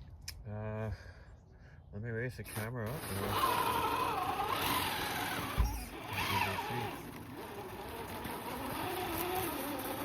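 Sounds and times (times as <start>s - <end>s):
small electric motor whining: 2.8s - 10.0s.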